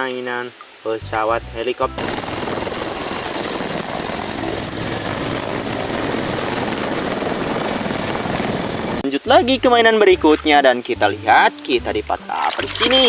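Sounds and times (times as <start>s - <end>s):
helicopter rush with high whine: 2.0s - 9.0s.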